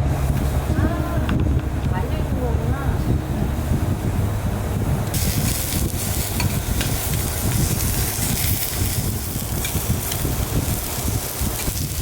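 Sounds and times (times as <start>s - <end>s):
low rumble: 0.0s - 12.0s
food sizzling in a hot pan: 5.1s - 12.0s.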